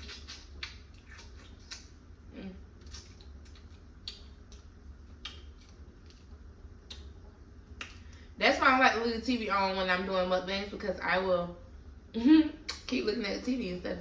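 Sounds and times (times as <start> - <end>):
wet chewing smacks: 0.0 - 2.0, 2.8 - 7.1
low steady hum: 0.0 - 14.0.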